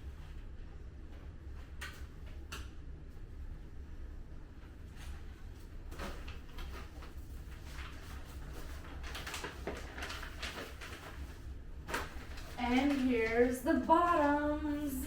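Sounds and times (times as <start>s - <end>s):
steady low hum: 0.0s - 15.0s
packaging rustling and crinkling: 5.9s - 14.6s.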